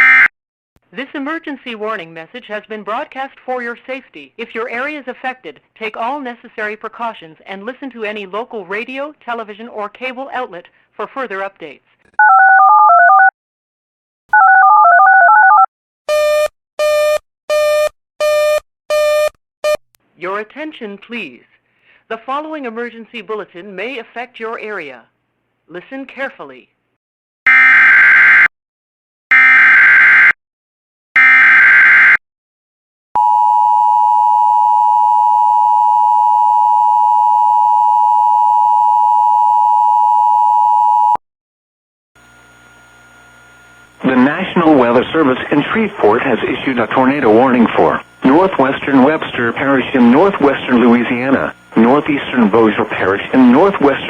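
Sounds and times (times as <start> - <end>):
two-tone alert alarm: 29.3 - 30.4, 31.2 - 32.2
buzzy pulsed tone: 42.2 - 49.5
digital data bursts: 44.0 - 54.0.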